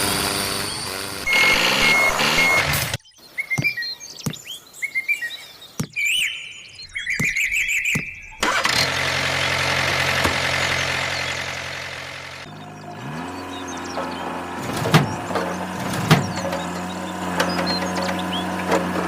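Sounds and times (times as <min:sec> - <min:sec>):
vehicle engine starting and running: 0:00.0 - 0:03.0, 0:08.3 - 0:19.0
sharp knocks: 0:14.0 - 0:19.0.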